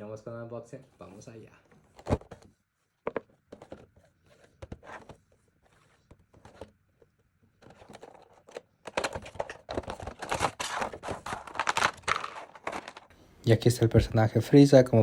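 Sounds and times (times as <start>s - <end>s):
packaging crinkling and rustling: 7.6s - 13.1s.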